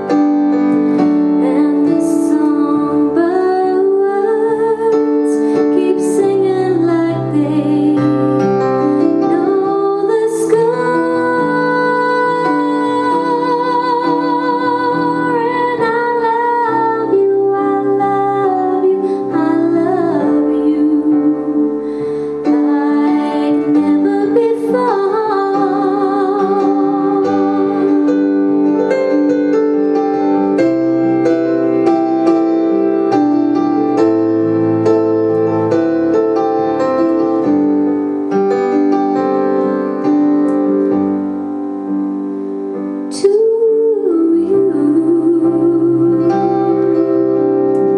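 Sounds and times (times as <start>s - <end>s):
keyboard accompaniment: 0.0s - 47.9s
woman singing with vibrato: 1.4s - 8.5s, 9.2s - 28.6s, 43.1s - 47.3s.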